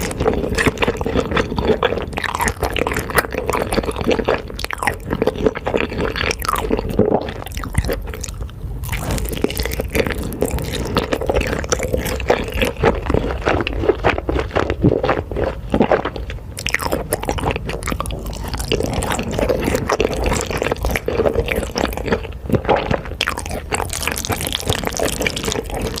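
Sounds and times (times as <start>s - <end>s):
wet chewing and smacking: 0.0s - 26.0s.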